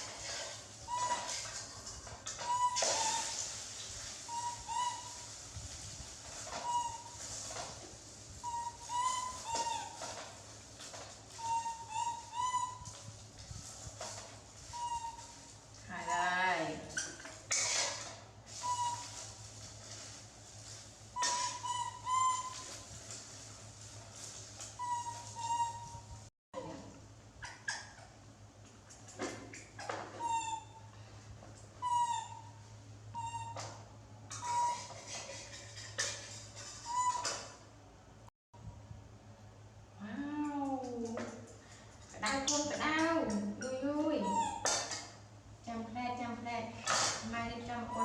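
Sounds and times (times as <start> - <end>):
monkey calling: 2.4 - 3.3, 4.3 - 5.2, 8.4 - 10.0, 11.4 - 12.9, 14.7 - 15.4, 18.6 - 19.2, 21.2 - 22.7, 24.8 - 26.0, 29.5 - 30.8, 31.8 - 32.6, 34.3 - 35.6, 36.8 - 37.4, 44.2 - 44.8
animal whistle-like calls: 2.4 - 3.4, 4.3 - 5.3, 6.5 - 7.2, 8.4 - 10.0, 11.4 - 12.9, 18.6 - 19.3, 21.2 - 22.8.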